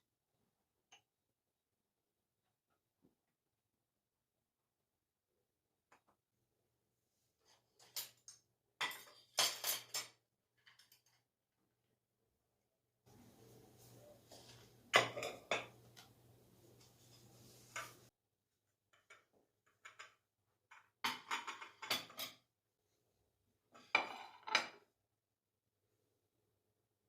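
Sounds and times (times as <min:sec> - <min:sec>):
dishes and cutlery clinking: 0:07.8 - 0:11.1, 0:13.3 - 0:16.1, 0:16.8 - 0:18.1.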